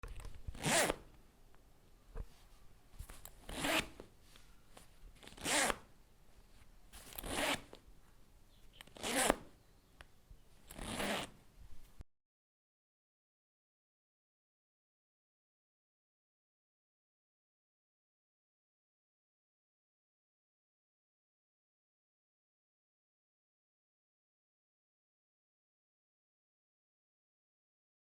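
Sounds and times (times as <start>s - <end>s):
zipper zipping: 0.5s - 1.1s, 3.4s - 4.1s, 5.2s - 5.9s, 7.0s - 7.8s, 8.8s - 9.5s, 10.7s - 11.4s.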